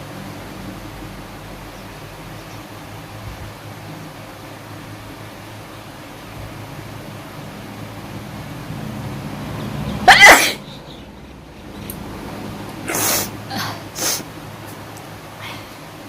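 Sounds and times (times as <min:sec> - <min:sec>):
woman sneezing: 0:10.1 - 0:10.6
breathy bursts: 0:12.8 - 0:14.3.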